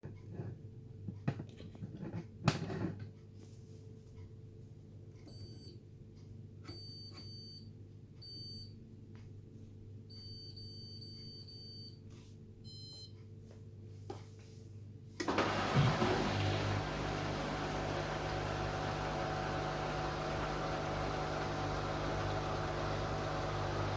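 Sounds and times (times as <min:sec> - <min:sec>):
washing machine running: 0:15.2 - 0:23.9.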